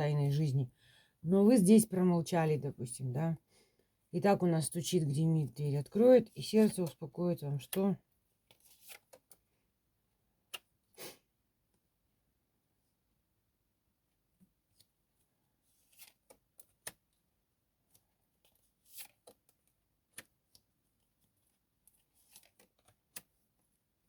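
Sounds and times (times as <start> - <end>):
cards clicking and rustling: 8.5 - 9.4, 18.5 - 19.6, 21.9 - 23.3.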